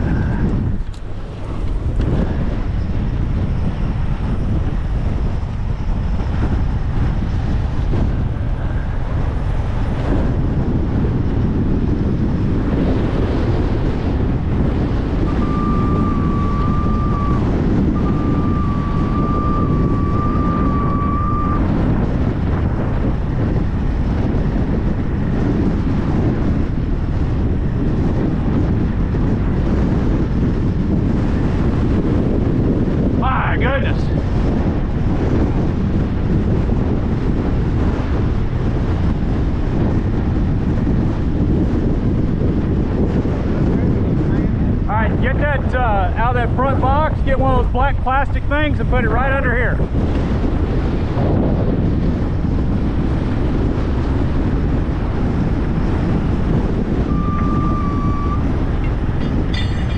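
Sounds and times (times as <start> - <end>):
strong wind buffeting microphone: 0.0 - 59.9
high whistle-like tone: 15.3 - 17.4, 18.0 - 21.6, 57.1 - 58.4.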